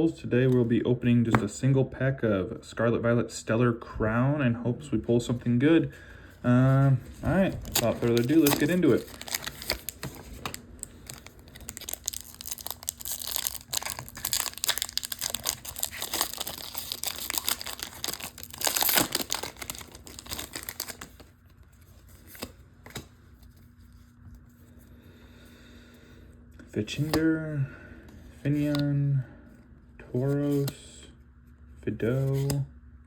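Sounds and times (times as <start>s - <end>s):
foil wrapper crinkling and tearing: 7.2s - 21.4s.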